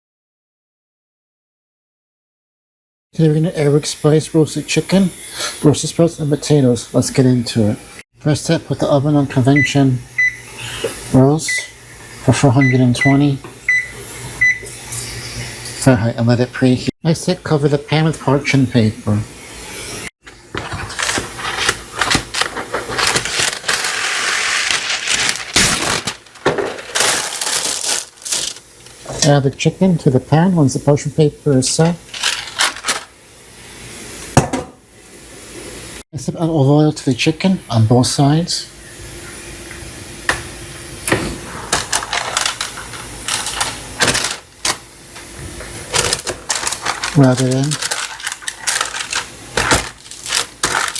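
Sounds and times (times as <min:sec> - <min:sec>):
parchment paper crinkling: 0:20.4 - 0:29.2, 0:32.1 - 0:33.1, 0:41.8 - 0:44.8, 0:45.7 - 0:50.9.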